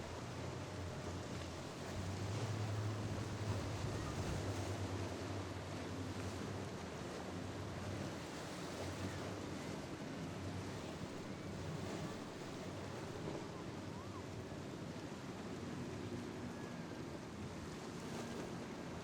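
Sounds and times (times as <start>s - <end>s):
boat engine drone: 0.0s - 19.0s
waves rushing: 0.0s - 19.0s
wind on microphone: 1.2s - 4.7s.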